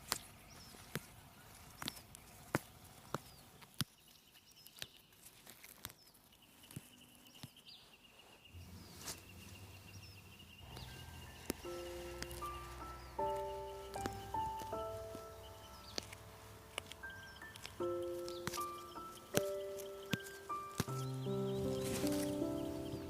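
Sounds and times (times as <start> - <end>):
faint high bird chirps: 3.1 - 23.0
low sustained music notes: 8.6 - 23.0
sharp irregular clicks: 10.7 - 21.4.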